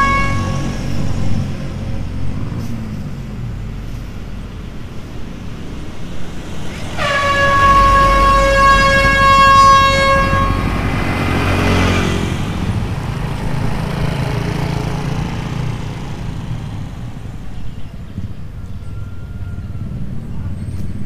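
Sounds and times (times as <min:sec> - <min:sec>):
truck air horn steady note: 0:00.0 - 0:01.4, 0:06.8 - 0:12.0
truck engine rumble: 0:00.0 - 0:21.0
truck passing with tyre noise: 0:00.0 - 0:21.0.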